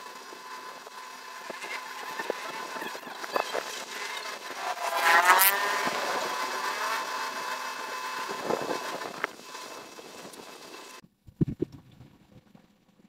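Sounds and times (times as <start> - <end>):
vehicle engine revving: 0.0 - 11.0.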